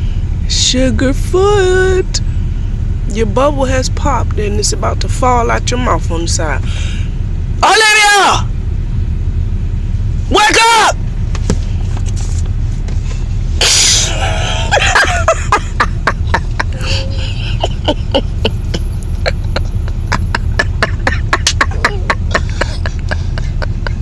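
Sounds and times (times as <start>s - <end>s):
low rumble: 11.0s - 24.0s.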